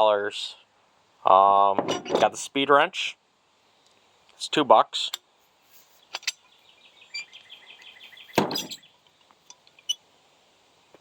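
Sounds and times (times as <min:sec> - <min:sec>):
metal tool clunk: 0:01.8 - 0:02.4, 0:06.1 - 0:06.4, 0:08.4 - 0:08.8.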